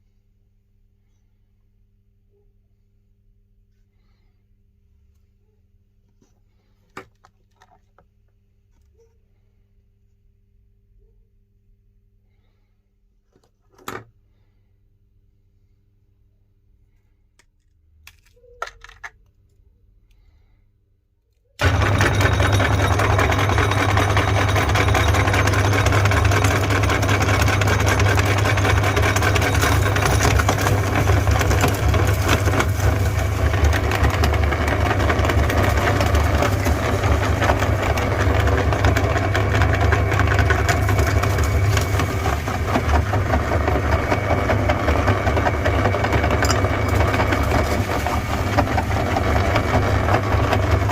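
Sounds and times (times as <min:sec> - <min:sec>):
crackling of grinding: 0:21.6 - 0:50.9
electric meat grinder running: 0:21.6 - 0:50.9.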